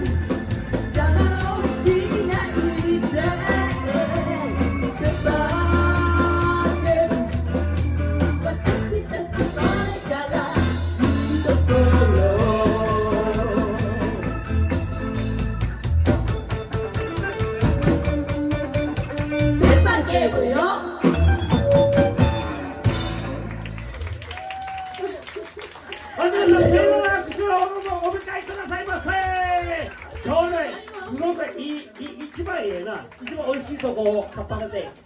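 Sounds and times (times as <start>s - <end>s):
live band playing: 0.0s - 25.7s.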